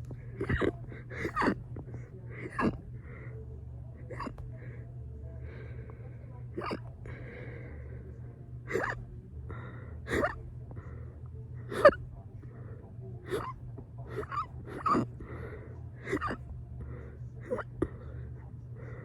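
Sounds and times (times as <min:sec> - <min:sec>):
soft breaths: 0:00.0 - 0:19.0
person hiccuping: 0:00.4 - 0:01.6, 0:02.4 - 0:02.8, 0:04.1 - 0:04.4, 0:06.6 - 0:06.8, 0:08.7 - 0:09.0, 0:10.1 - 0:10.4, 0:11.7 - 0:12.0, 0:13.3 - 0:15.1, 0:16.0 - 0:16.4, 0:17.5 - 0:17.8.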